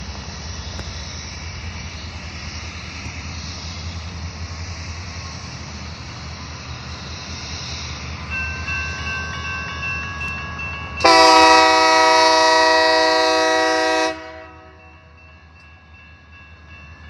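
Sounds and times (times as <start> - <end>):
diesel locomotive rumble: 0.0 - 17.0
train air horn chord: 11.0 - 15.0.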